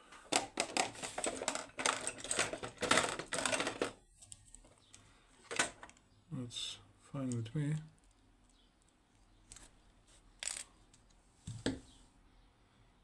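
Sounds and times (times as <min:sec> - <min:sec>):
lock parts clicking and scraping: 0:00.4 - 0:04.0, 0:10.4 - 0:10.7.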